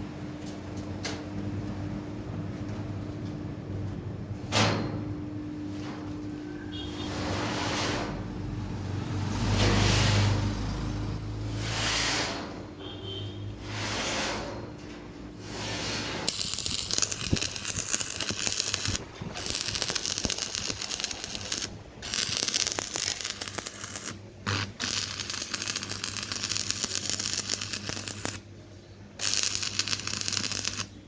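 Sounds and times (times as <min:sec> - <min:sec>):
welding arc crackling: 0:16.2 - 0:28.4, 0:29.2 - 0:31.0.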